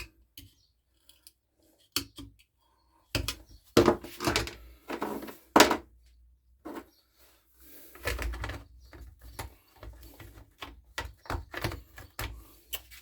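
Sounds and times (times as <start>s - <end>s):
tools knocking on a workbench: 3.8s - 5.8s.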